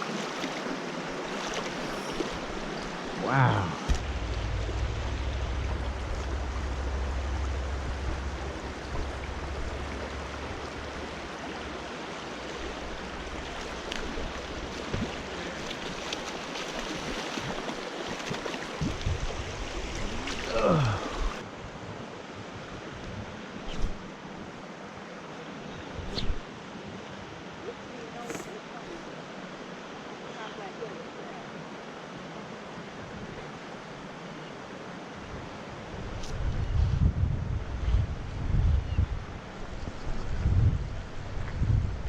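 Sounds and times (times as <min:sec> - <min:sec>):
river water rushing: 0:00.0 - 0:25.6
low rumble: 0:03.2 - 0:13.6.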